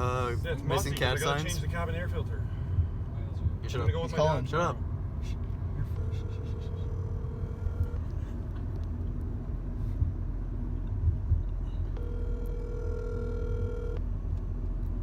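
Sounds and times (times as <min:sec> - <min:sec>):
low car cabin rumble: 0:00.0 - 0:15.0
telephone ringback tone: 0:06.0 - 0:08.1, 0:12.0 - 0:14.0.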